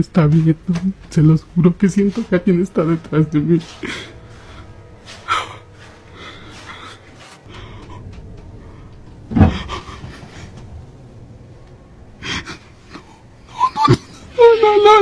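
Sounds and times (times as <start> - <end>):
person breathing heavily: 3.6 - 10.8, 12.2 - 14.3.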